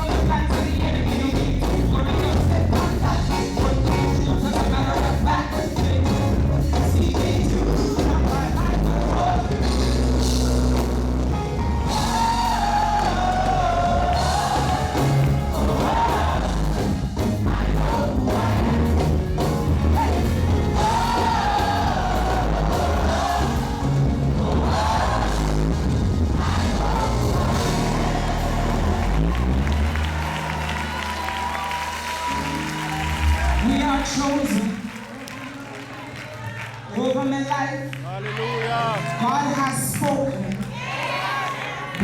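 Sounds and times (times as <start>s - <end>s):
person singing: 0.0s - 10.2s
live gospel band playing: 0.0s - 41.9s.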